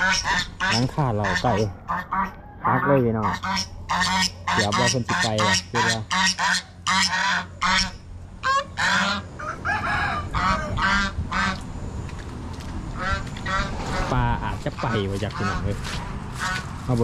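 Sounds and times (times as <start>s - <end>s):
waterfowl calling: 0.0s - 11.7s, 12.9s - 16.7s.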